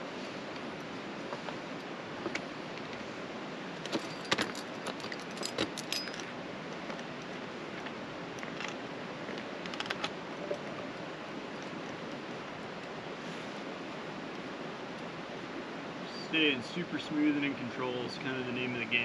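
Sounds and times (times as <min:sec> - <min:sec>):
metal hardware clinking on rock: 0:03.8 - 0:06.3
background hiss: 0:09.0 - 0:19.0.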